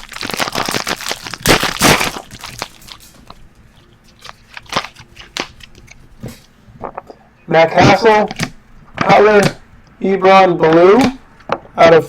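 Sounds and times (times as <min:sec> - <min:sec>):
wrapper tearing and crinkling: 0:00.0 - 0:05.8
cards clicking and rustling: 0:04.1 - 0:07.0.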